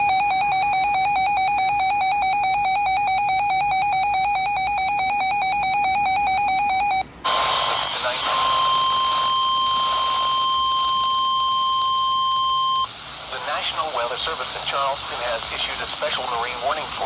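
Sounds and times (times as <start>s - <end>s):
pulsing electronic alarm tone: 0.0s - 7.0s, 8.4s - 12.9s
steady warning alarm tone: 0.0s - 7.4s, 8.2s - 13.0s
radio static hiss: 7.2s - 17.0s.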